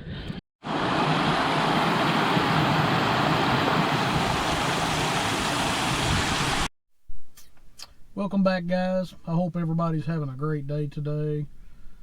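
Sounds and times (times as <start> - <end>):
loud rushing noise: 0.6 - 6.7.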